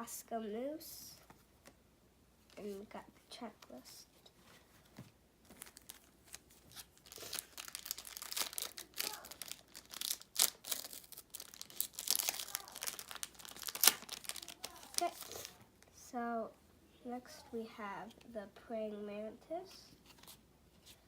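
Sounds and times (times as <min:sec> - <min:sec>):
wrapper tearing and crinkling: 0:05.5 - 0:15.6.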